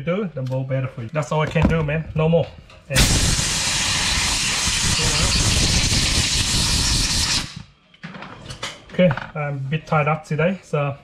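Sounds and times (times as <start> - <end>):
pressurised jet hissing: 3.0 - 7.6.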